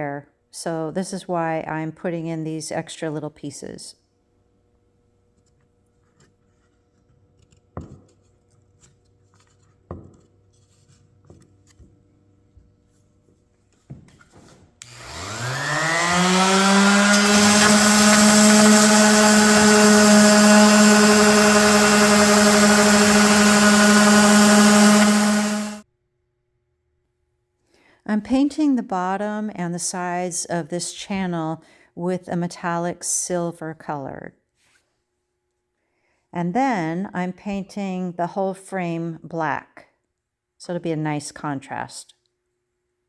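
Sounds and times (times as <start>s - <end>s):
power tool motor whining: 14.8s - 25.8s.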